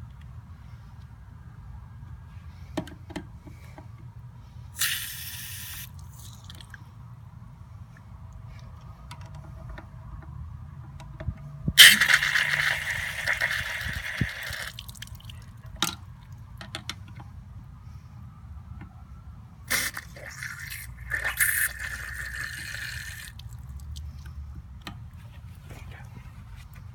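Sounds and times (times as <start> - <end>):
water hissing out: 4.8 - 6.6, 11.8 - 15.0, 19.7 - 23.4.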